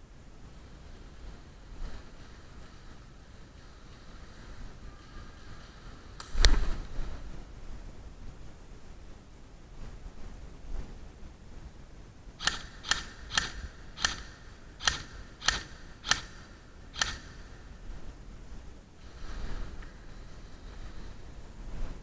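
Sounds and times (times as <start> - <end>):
airsoft gun shots: 12.4 - 17.4
soft rustle: 17.6 - 22.0.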